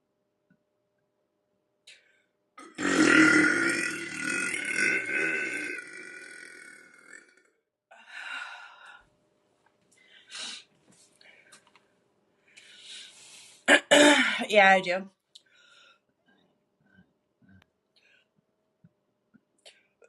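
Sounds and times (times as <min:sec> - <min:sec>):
woman burping: 0:02.6 - 0:07.4, 0:13.7 - 0:14.5.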